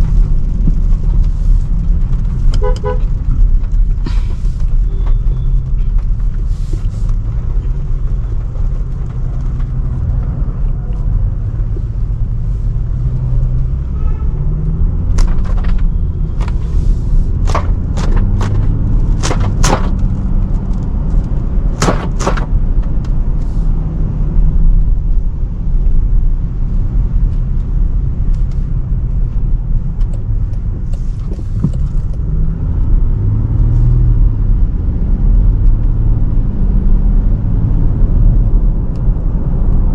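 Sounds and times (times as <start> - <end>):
car engine rumble: 0.0 - 39.9
road noise: 0.0 - 39.9
sharp clicks and knocks: 15.1 - 23.2.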